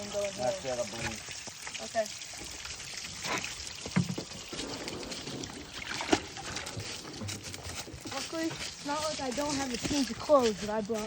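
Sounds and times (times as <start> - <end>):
water pouring and splashing: 0.0 - 11.0
sharp splashes: 4.3 - 10.3.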